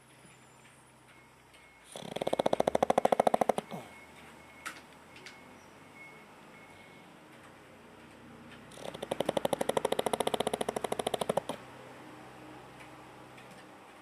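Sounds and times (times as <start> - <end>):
dog snoring: 1.9 - 4.0, 8.7 - 11.6.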